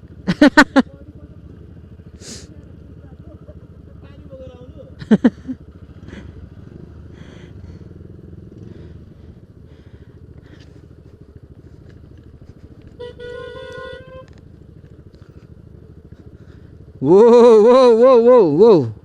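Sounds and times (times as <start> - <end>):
scooter engine running: 0.0 - 19.0
horn sounding: 12.8 - 14.5.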